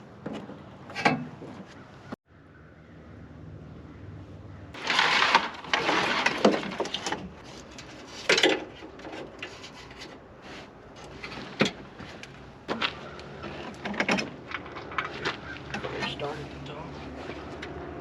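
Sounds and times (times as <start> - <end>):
clicks and knocks of parts: 4.8 - 10.2
rustling: 4.8 - 15.8.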